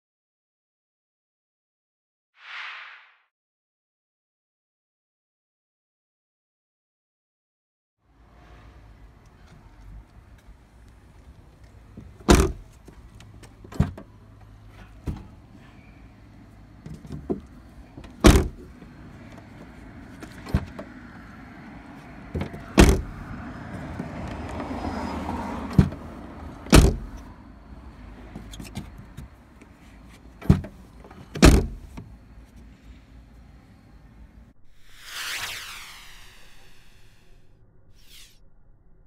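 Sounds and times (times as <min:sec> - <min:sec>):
car hatch slamming: 0:12.2 - 0:12.7, 0:18.2 - 0:18.7, 0:22.8 - 0:23.2, 0:26.7 - 0:27.2, 0:31.4 - 0:31.9.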